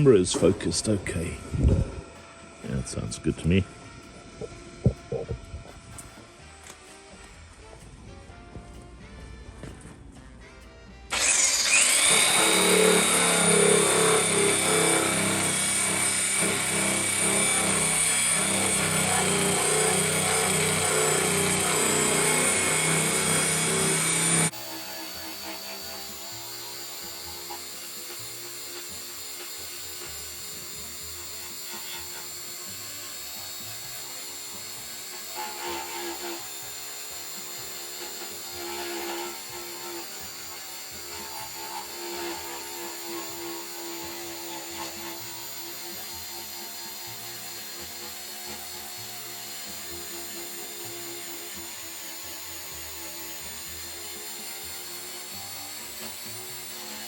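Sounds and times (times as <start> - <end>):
drum sander whining: 0.0 - 8.0, 11.1 - 57.0.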